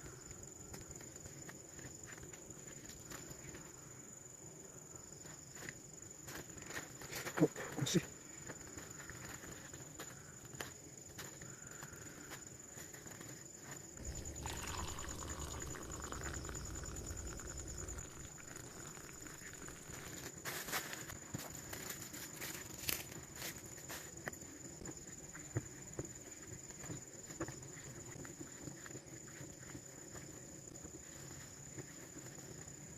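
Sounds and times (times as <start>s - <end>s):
person eating noodles: 14.0s - 20.2s
steady high-pitched whine: 14.0s - 20.3s.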